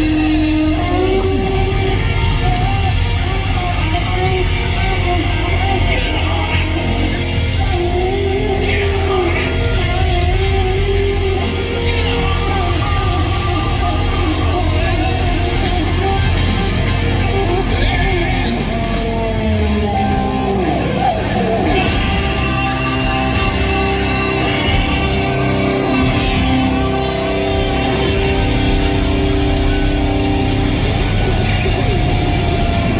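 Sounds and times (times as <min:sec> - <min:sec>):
rock band playing: 0:00.0 - 0:32.9
sliding guitar notes: 0:00.0 - 0:32.9.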